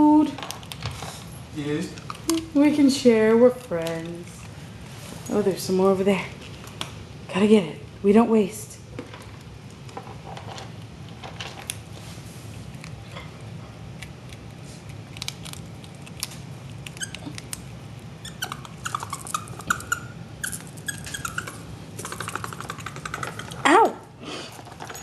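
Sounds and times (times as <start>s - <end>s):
animal crunching dry food: 9.0s - 23.6s, 24.5s - 25.0s.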